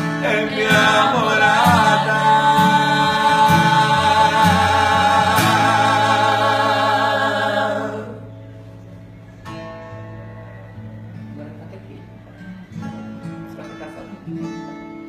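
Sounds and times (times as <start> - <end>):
gospel singers in harmony: 0.0 - 8.6
acoustic guitar: 0.0 - 15.0.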